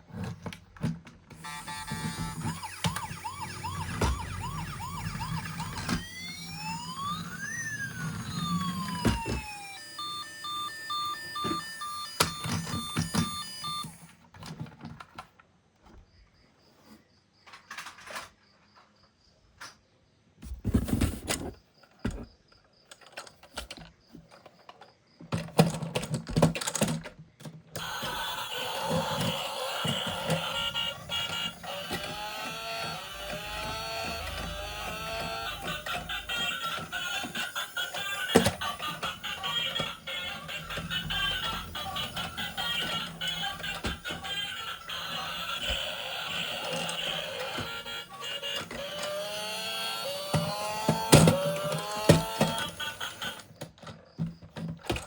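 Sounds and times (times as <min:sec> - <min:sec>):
plastic toys clicking and knocking: 0:00.1 - 0:16.0, 0:17.4 - 0:18.9, 0:20.8 - 0:55.0
toy electronic siren: 0:01.4 - 0:14.1, 0:27.8 - 0:53.6.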